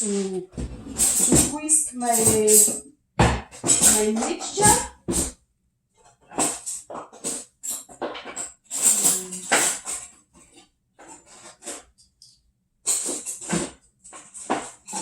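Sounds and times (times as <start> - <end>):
metal utensils clattering: 0.0 - 2.8, 3.5 - 5.3, 6.2 - 10.2, 12.9 - 15.0.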